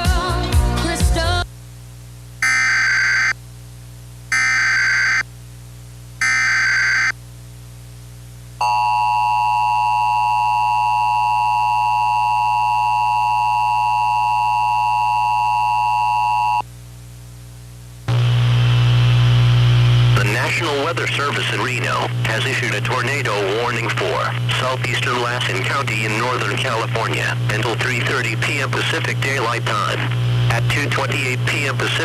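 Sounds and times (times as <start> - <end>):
constant low hum: 0.7 - 32.0
steady attention tone: 8.6 - 16.6.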